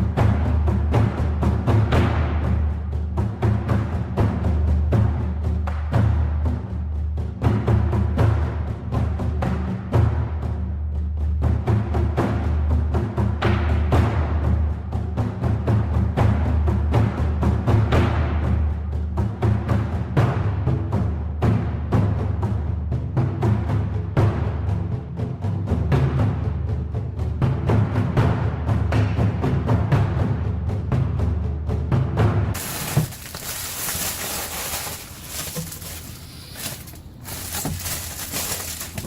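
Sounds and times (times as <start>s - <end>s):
packaging rustling and crinkling: 32.6s - 39.0s
small clicks and crackles: 32.6s - 39.0s.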